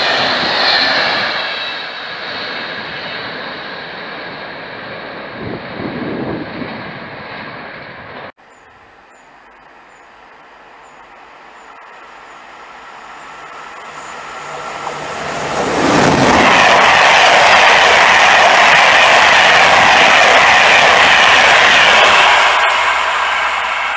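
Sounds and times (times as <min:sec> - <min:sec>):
train rolling on rails: 0:06.0 - 0:23.9.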